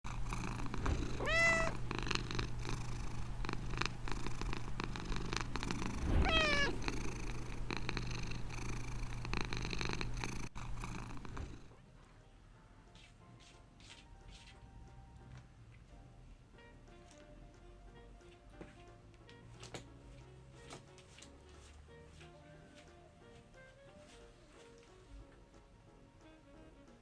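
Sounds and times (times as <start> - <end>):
cat meowing: 1.2 - 1.8, 6.2 - 6.8.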